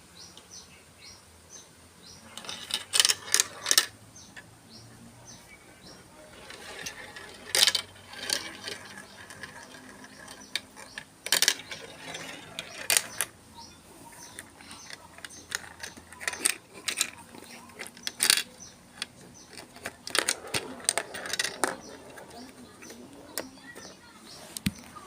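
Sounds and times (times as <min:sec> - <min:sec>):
marbles clacking in marble run: 0:02.4 - 0:03.9, 0:06.3 - 0:13.4, 0:14.2 - 0:23.6.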